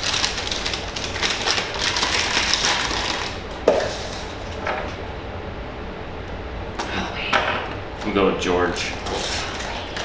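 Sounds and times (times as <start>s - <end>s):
packaging crinkling: 0.0s - 4.6s.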